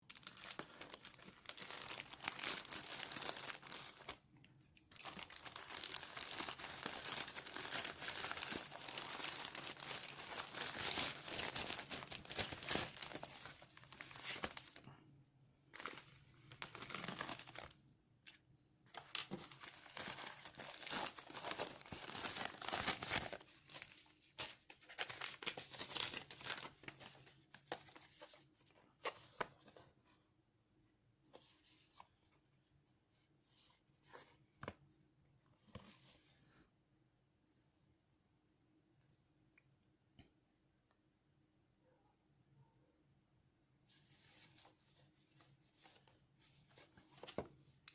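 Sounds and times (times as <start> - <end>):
packaging crinkling and rustling: 0.1 - 4.2, 4.8 - 14.9, 15.7 - 17.8, 18.9 - 28.4.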